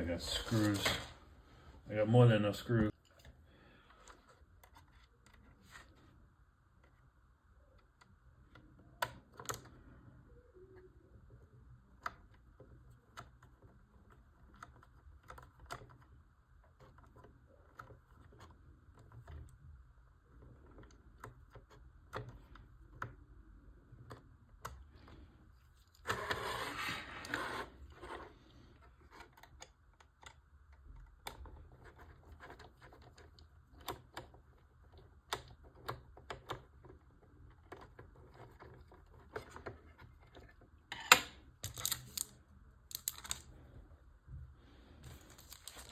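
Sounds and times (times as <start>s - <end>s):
plastic parts clicking and rattling: 28.8s - 43.7s, 45.0s - 45.9s
rustling: 44.8s - 45.9s.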